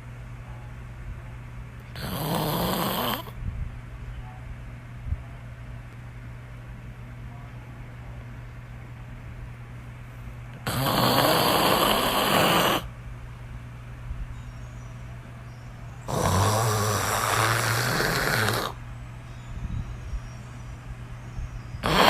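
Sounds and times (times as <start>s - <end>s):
person fake snoring: 2.0s - 3.3s, 10.7s - 12.9s, 16.1s - 18.8s.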